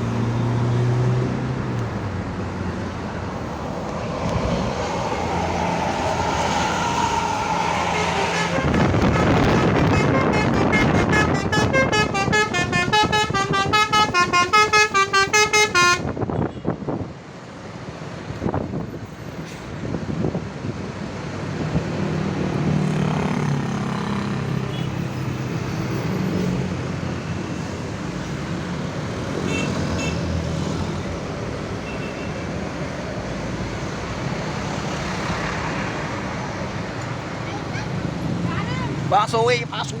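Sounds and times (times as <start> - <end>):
engine and traffic noise: 0.0 - 40.0
bus horn playing tune: 7.7 - 16.1.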